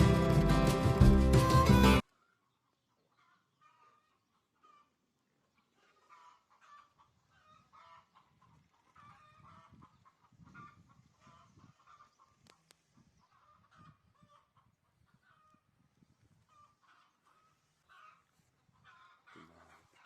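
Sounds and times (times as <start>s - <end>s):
fowl clucking: 5.8s - 12.2s, 16.5s - 20.0s.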